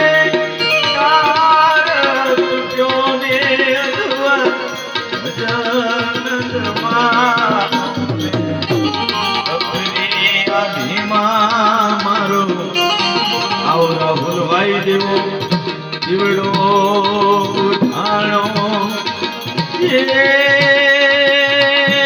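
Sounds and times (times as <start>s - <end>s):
indian banjo melody: 0.0s - 22.0s
tabla rhythm: 0.0s - 22.0s.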